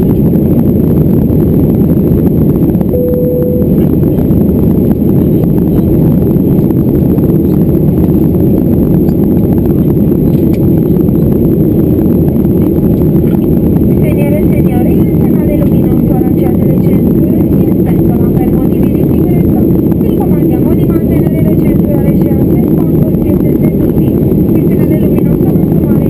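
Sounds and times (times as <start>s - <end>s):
airplane engines rumbling: 0.0s - 26.0s
short steady tone: 2.9s - 4.2s.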